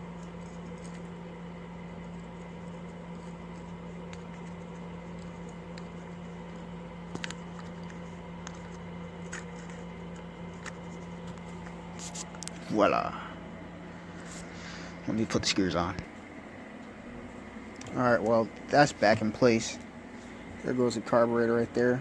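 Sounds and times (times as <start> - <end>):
steady low hum: 0.0 - 22.0
small parts clicking and tapping: 3.2 - 11.4.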